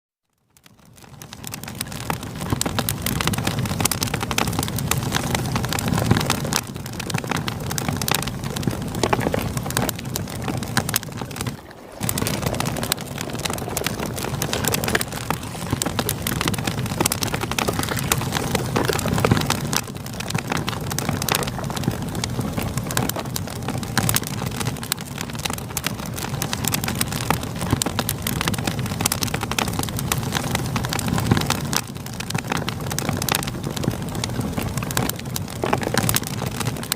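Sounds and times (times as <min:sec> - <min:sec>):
campfire crackling and popping: 0:00.4 - 0:36.9
river water flowing: 0:09.6 - 0:22.0.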